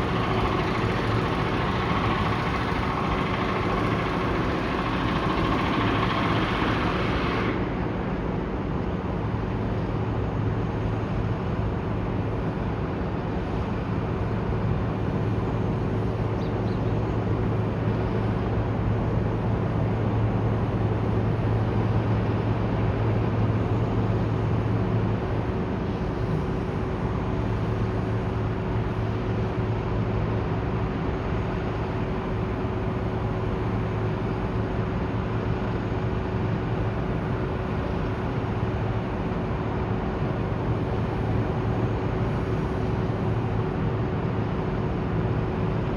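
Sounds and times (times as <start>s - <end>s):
city noise: 0.0s - 45.9s
low engine drone: 0.0s - 45.9s.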